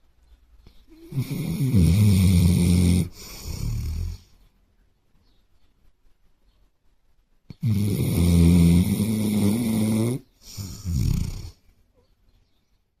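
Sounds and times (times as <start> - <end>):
dog snoring: 1.0 - 4.3, 7.6 - 11.6.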